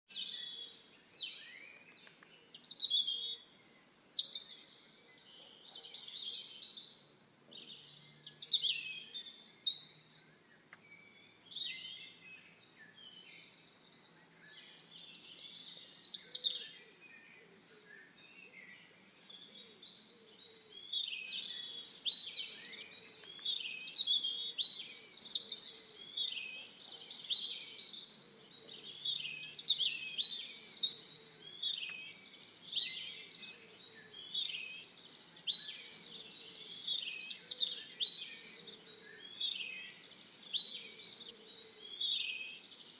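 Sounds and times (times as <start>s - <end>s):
songbirds chirping and singing: 0.1s - 42.9s.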